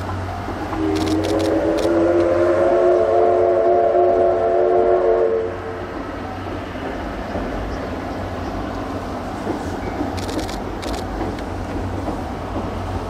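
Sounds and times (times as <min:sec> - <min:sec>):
train running rumble: 0:00.0 - 0:13.0
steam locomotive whistle: 0:00.8 - 0:05.8.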